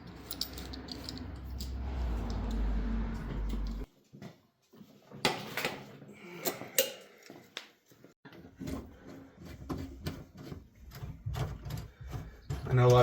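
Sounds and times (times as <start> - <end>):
tools and parts clattering: 0.0 - 4.3.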